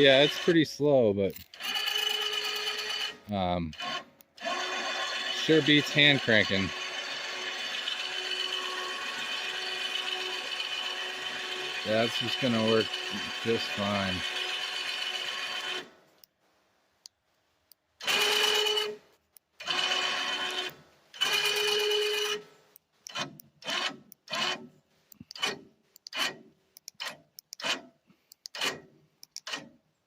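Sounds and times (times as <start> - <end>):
electric winch motor running: 0.0 - 0.7, 1.5 - 16.0, 18.0 - 24.6.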